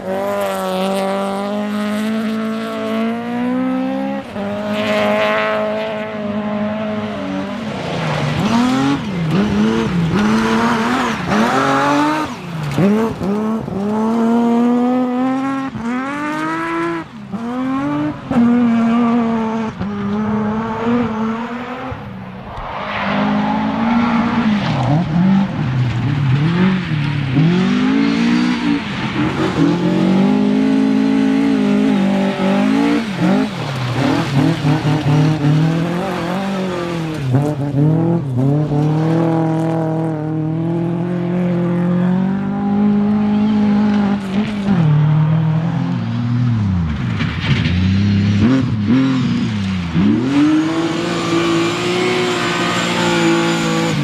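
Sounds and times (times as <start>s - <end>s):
rally car engines revving: 0.0s - 54.0s.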